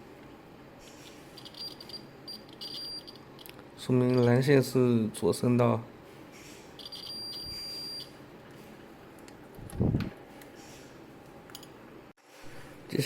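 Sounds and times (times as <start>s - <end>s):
multimeter high beep: 1.4s - 3.2s, 6.8s - 8.2s.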